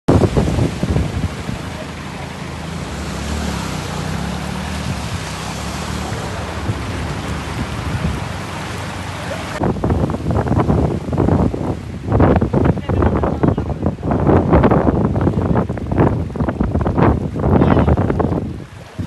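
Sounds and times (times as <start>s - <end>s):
heavy rain hissing: 0.1s - 14.8s
wind buffeting microphone: 0.1s - 19.0s.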